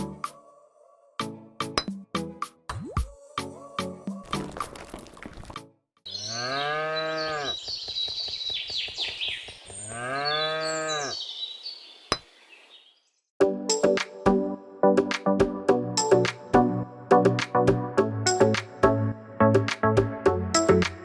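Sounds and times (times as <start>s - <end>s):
cow mooing: 6.1s - 7.6s, 9.9s - 11.2s
high chirping: 6.1s - 13.1s.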